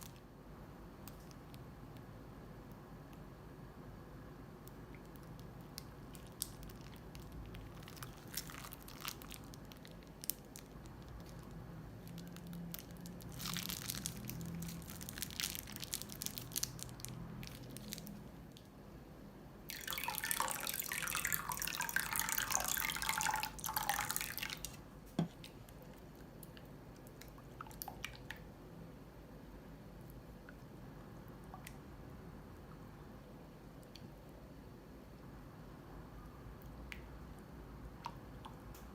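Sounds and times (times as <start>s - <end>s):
slime squelching: 4.7s - 18.3s.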